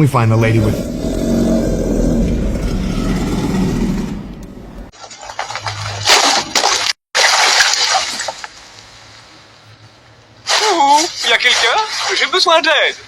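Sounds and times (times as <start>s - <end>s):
cartoon crashing and splashing: 4.9s - 8.5s.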